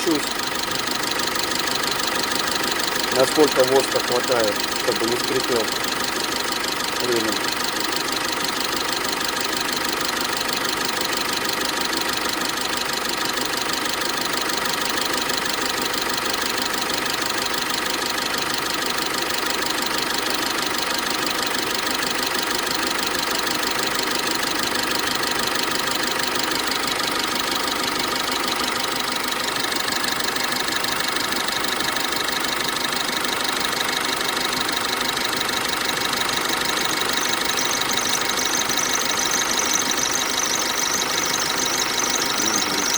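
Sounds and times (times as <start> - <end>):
diesel engine running: 0.0 - 42.9
high thin tone: 37.7 - 42.9.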